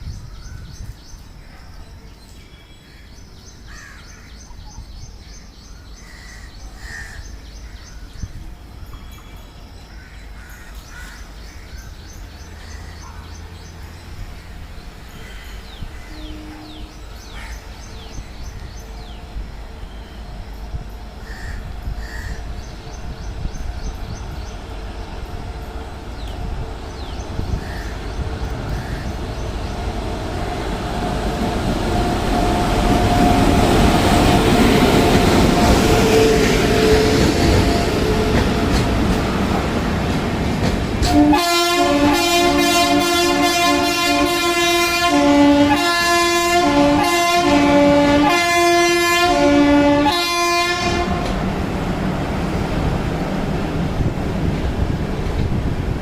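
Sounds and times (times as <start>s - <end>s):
train rumble: 0.0s - 56.0s
locomotive horn blasts: 16.0s - 17.2s, 41.0s - 51.4s.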